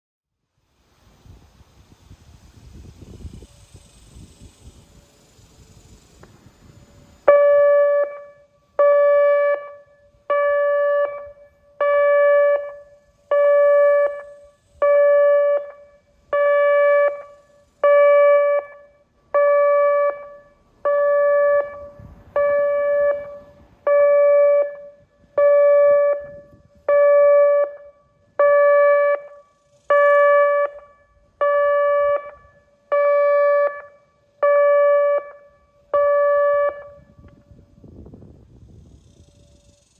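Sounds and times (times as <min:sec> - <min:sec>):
warning siren pulse blasts: 0:06.4 - 0:37.8.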